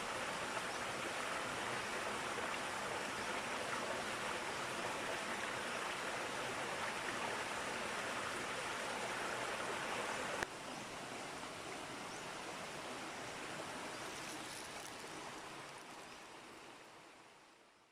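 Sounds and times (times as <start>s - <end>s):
small stream of water flowing: 0.0s - 17.9s.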